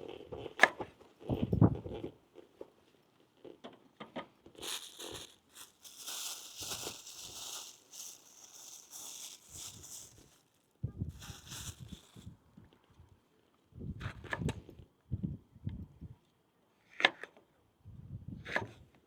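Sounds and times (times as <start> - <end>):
packaging crinkling and tearing: 4.6 - 12.3.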